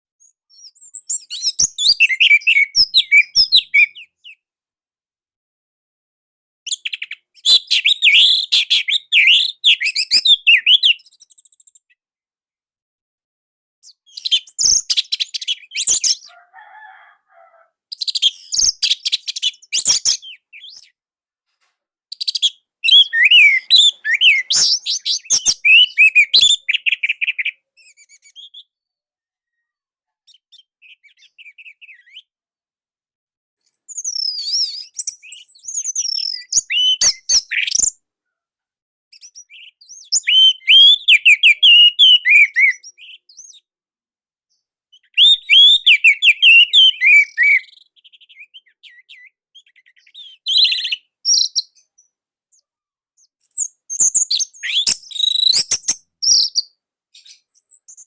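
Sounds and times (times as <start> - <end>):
bird singing: 0.2 - 4.4, 6.7 - 11.8, 22.2 - 28.8, 39.2 - 43.4, 45.0 - 52.1.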